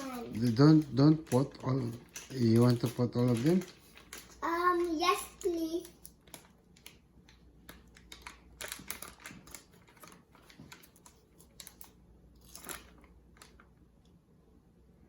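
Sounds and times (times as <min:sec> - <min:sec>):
kitchen utensils tapping and clicking: 0:00.0 - 0:06.0.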